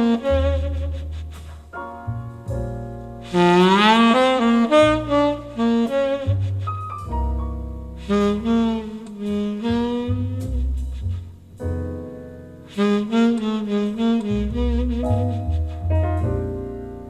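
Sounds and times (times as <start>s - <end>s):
saxophone melody: 0.0s - 1.4s, 3.3s - 7.4s, 8.0s - 11.0s, 12.7s - 16.8s
low bass line: 0.0s - 17.0s.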